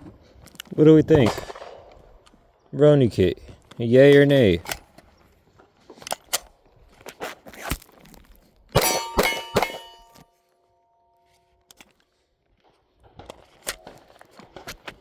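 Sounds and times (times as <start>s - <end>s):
metallic clang and clatter: 8.8s - 10.3s.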